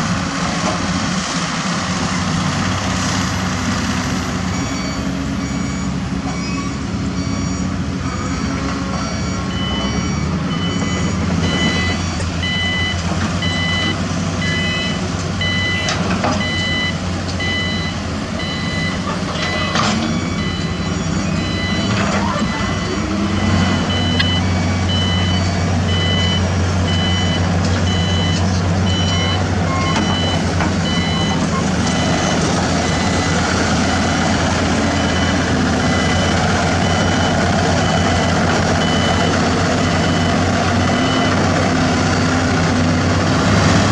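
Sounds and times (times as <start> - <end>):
heavy diesel engines running: 0.0 - 43.9
reversing alarm beeping: 4.4 - 42.3.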